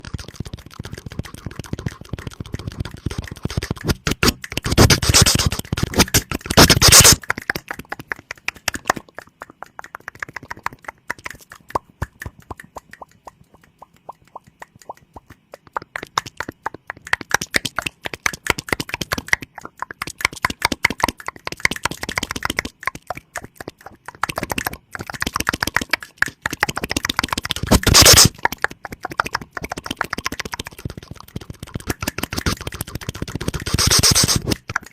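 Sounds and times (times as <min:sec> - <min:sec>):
mouth clicks and pops: 0:00.0 - 0:34.9.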